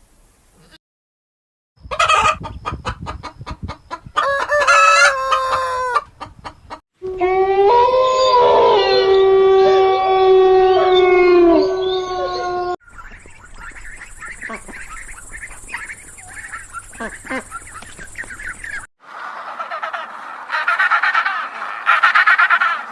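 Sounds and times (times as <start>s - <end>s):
chickens clucking: 1.8s - 6.8s, 12.9s - 22.9s
rooster crowing: 4.2s - 6.1s.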